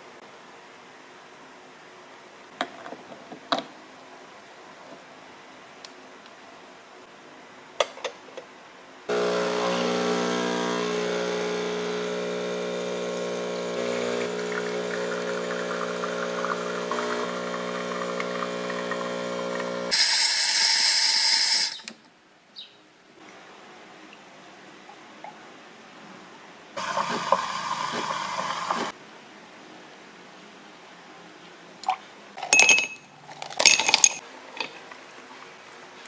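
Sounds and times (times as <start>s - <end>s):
espresso machine humming: 9.1s - 20.3s, 26.8s - 28.9s
loud hiss: 19.3s - 21.8s.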